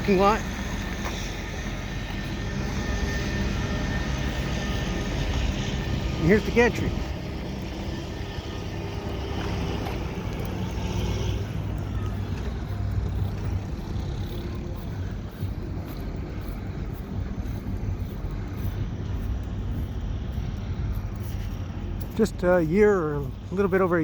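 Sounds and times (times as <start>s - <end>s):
low rumble of motor vehicles: 0.0s - 24.0s.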